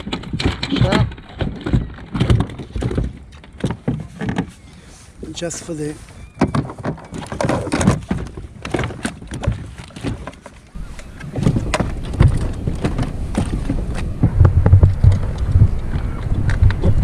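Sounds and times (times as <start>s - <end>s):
clicks and knocks on plastic kayak: 0.0s - 4.9s, 6.1s - 15.2s
low thumps: 6.4s - 17.0s
steady low rumble: 10.7s - 17.0s.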